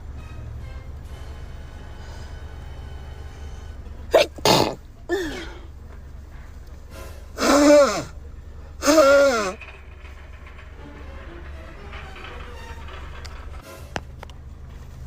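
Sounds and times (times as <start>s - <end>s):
woman sneezing: 4.1s - 5.6s, 7.4s - 8.1s.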